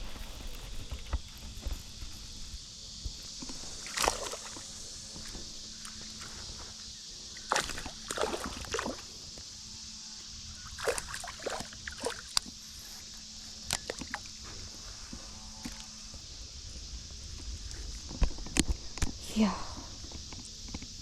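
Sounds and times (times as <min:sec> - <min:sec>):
water sloshing and splashing: 0:03.4 - 0:04.7, 0:07.4 - 0:09.1, 0:10.7 - 0:12.4.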